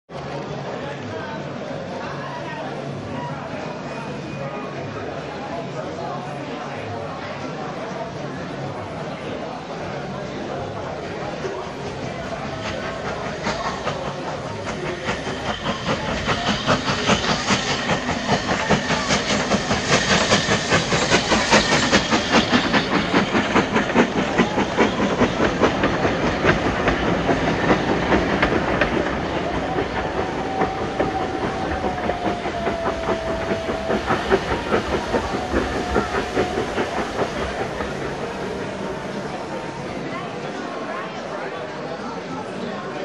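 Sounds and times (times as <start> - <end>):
model train wheels clicking: 11.3 - 40.6.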